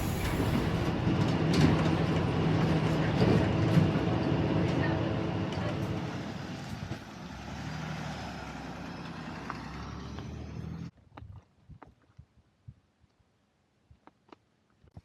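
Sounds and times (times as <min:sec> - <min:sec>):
bus engine and road noise: 0:00.0 - 0:11.0.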